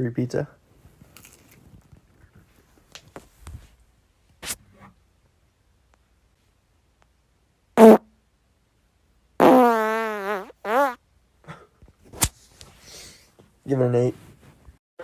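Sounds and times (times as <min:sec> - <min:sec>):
man farting: 0:07.8 - 0:08.1, 0:09.4 - 0:11.0.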